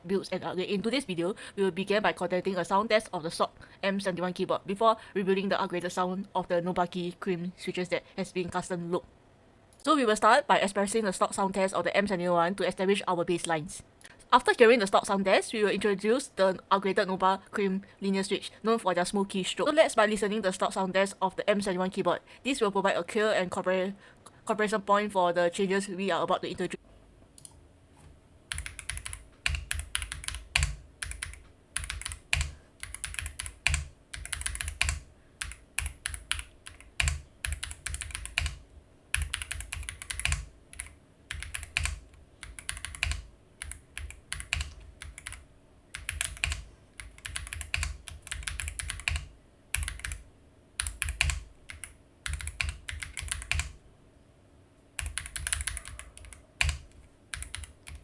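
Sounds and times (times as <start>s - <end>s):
mechanical keyboard typing: 28.5s - 50.2s, 50.8s - 53.8s, 55.0s - 58.0s.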